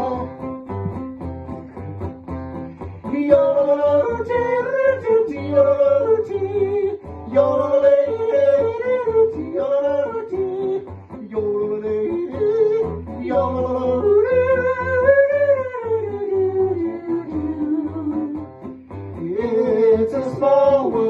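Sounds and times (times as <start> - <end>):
guitar accompaniment: 0.0 - 21.0
person yodeling: 3.1 - 18.4.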